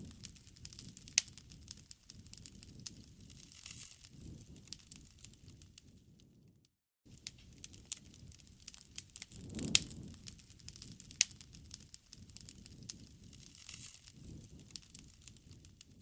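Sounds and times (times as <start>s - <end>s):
sharp pops of fire: 0.0s - 6.2s, 7.1s - 16.0s
wood fire crackling: 0.0s - 6.4s, 7.1s - 16.0s
low rumble of burning: 0.0s - 16.0s.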